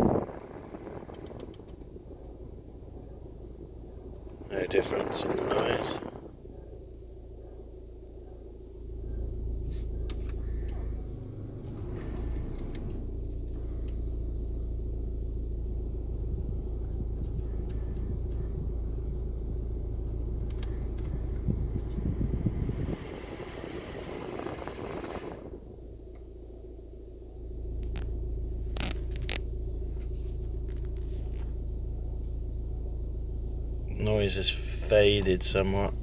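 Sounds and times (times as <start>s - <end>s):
car engine idling: 0.0s - 36.0s
steady grinding noise: 20.4s - 25.8s.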